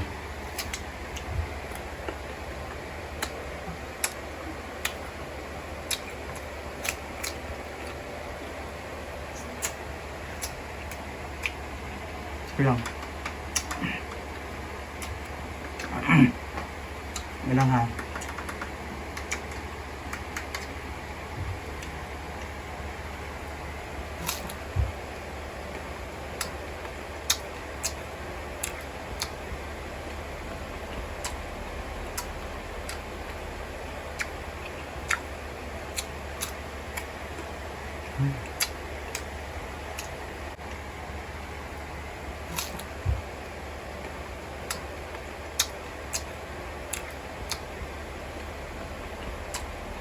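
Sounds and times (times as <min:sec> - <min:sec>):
steady low hum: 0:00.0 - 0:50.0
person eating clicks and smacks: 0:00.4 - 0:05.1, 0:05.8 - 0:08.0, 0:09.5 - 0:20.8, 0:24.1 - 0:25.0, 0:25.7 - 0:40.8, 0:42.4 - 0:43.2, 0:44.6 - 0:48.5, 0:49.1 - 0:49.9
crunching while eating: 0:24.2 - 0:24.7, 0:42.4 - 0:43.0.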